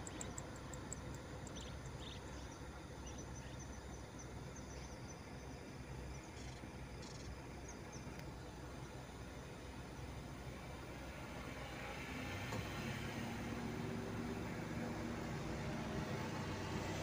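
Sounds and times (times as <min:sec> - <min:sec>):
small birds chirping: 0:00.0 - 0:09.1
low ambient rumble: 0:00.0 - 0:17.0.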